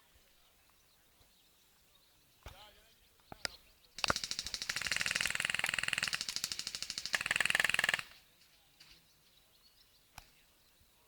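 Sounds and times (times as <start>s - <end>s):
airsoft gun full-auto burst: 4.0s - 8.2s.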